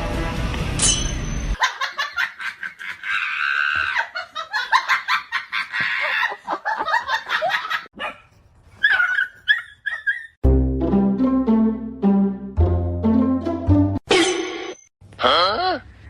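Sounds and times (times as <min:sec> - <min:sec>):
music: 0:00.0 - 0:00.8, 0:10.4 - 0:14.0.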